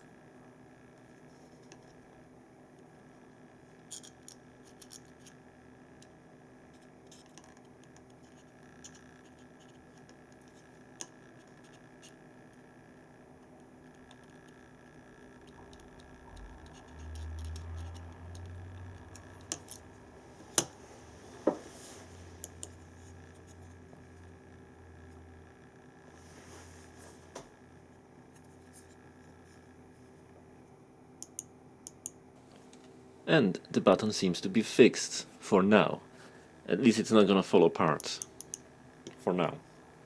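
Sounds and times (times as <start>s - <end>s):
low rumble of handling: 15.4s - 25.5s.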